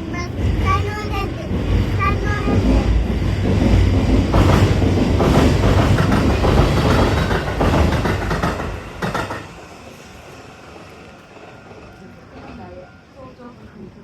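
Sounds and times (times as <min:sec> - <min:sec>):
wheels clacking over rail joints: 0:00.0 - 0:10.0
heavy train rumble: 0:00.0 - 0:14.0.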